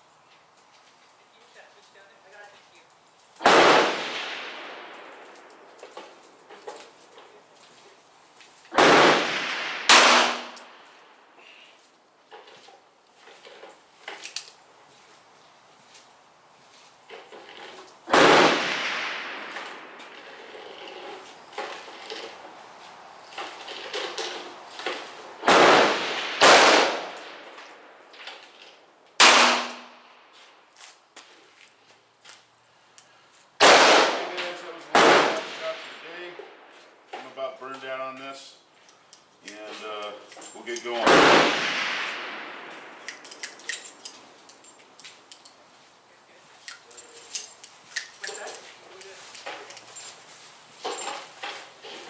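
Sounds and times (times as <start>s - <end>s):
gunshot echo: 3.4s - 5.3s, 8.7s - 10.8s, 18.1s - 20.2s, 25.4s - 27.4s, 29.2s - 30.0s, 33.6s - 36.1s, 41.0s - 43.1s.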